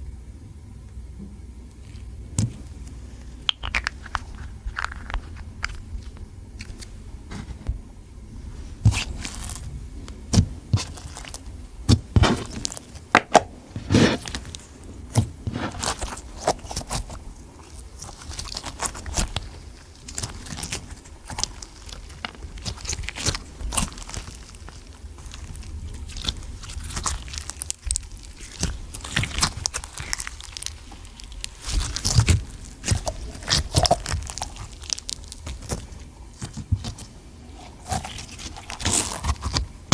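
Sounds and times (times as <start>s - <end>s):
slime clicking and popping: 3.5s - 5.8s.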